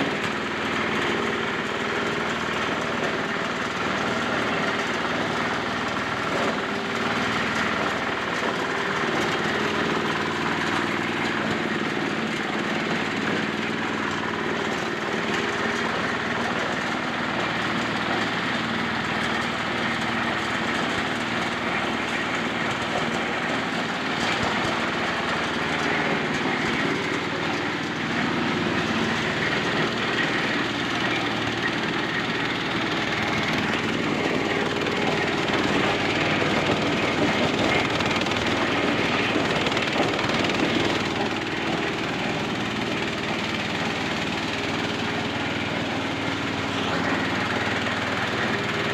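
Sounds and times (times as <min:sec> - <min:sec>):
small engine droning: 0:00.0 - 0:48.9
shelling drum rattling: 0:15.2 - 0:48.9.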